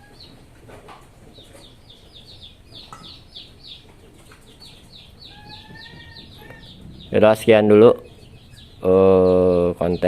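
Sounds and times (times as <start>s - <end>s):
bird chirping: 0.0s - 10.0s.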